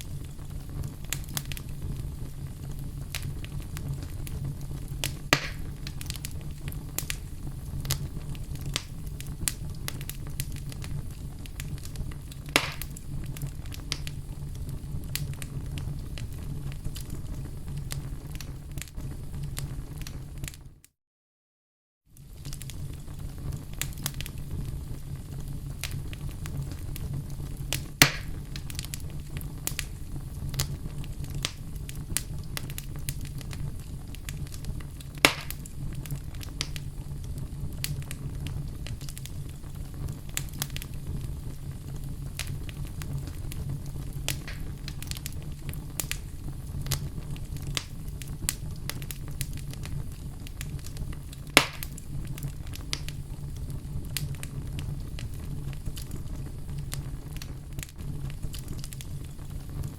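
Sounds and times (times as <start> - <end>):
fire rumbling: 0.0 - 20.8, 22.1 - 59.9
wood crackling: 0.2 - 18.9, 23.6 - 59.9
logs popping: 5.0 - 6.3, 12.5 - 13.0, 28.0 - 28.9, 35.2 - 35.7, 44.3 - 45.3, 51.6 - 52.0.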